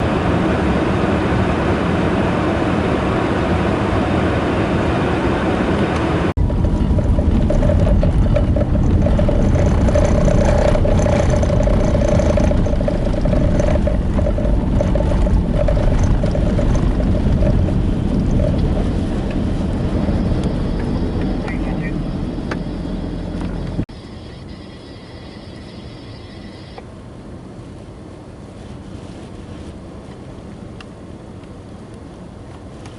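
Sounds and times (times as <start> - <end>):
blizzard wind rushing: 0.0 - 23.9
vehicle driving with low rumble: 0.0 - 32.9.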